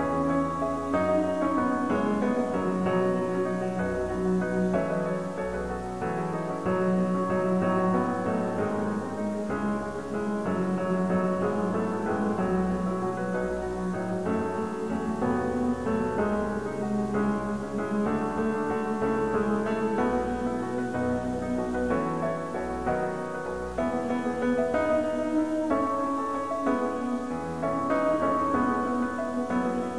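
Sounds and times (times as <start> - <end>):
piano music: 0.0 - 29.9.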